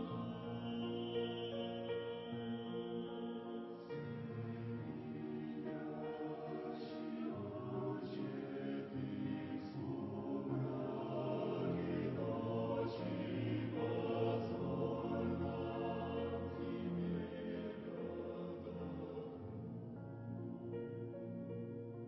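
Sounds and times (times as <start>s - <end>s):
choir singing a hymn: 0.0s - 20.6s.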